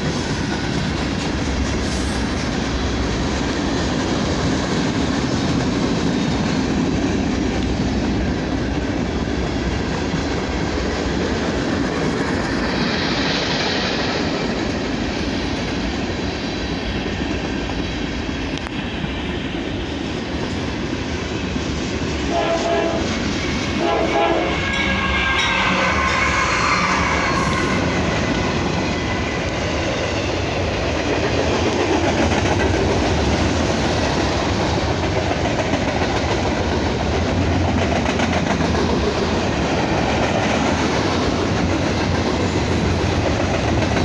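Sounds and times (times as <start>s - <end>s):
freight train wheels rumbling on rails: 0.0s - 44.0s
train horn: 22.3s - 28.5s.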